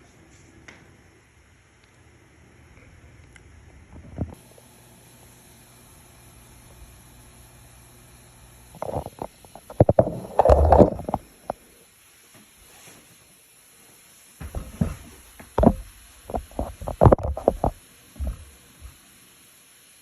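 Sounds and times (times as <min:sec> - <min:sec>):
sharp microphone pops: 0:14.4 - 0:18.5.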